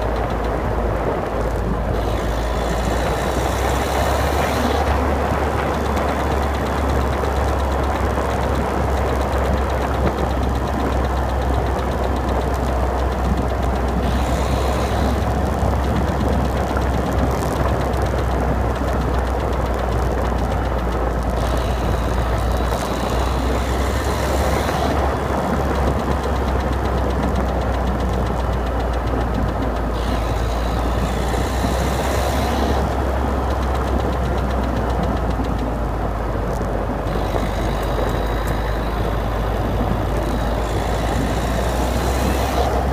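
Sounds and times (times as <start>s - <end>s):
diesel engine running: 0.0s - 42.9s
engine clicking noise: 0.0s - 42.9s.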